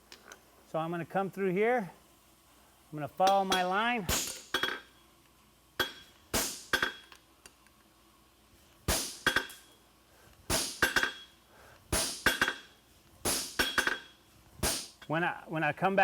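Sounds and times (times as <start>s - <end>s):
hammer striking steel on anvil: 3.2s - 5.0s, 5.8s - 7.2s, 8.9s - 9.8s, 10.5s - 15.1s.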